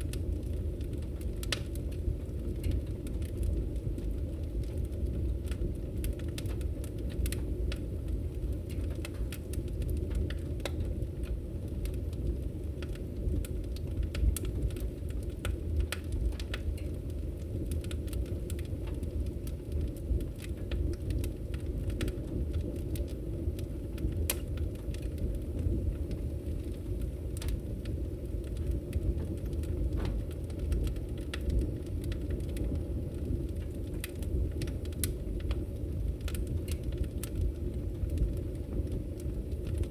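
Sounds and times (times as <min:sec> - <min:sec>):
fire crackling and popping: 0:00.0 - 0:39.9.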